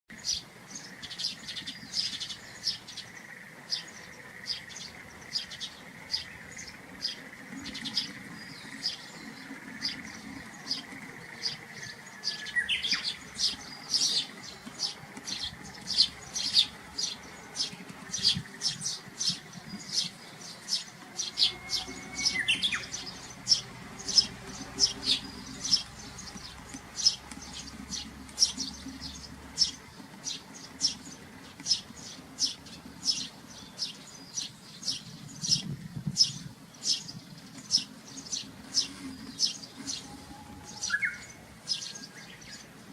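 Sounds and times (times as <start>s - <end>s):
bird chirping: 0.1s - 42.9s.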